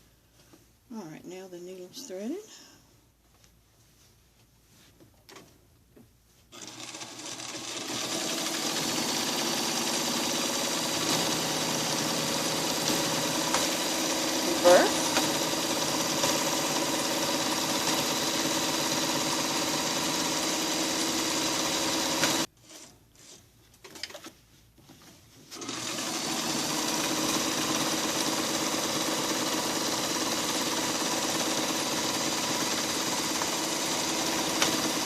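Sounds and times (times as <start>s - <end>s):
sewing machine running: 6.5s - 22.8s, 25.5s - 35.0s.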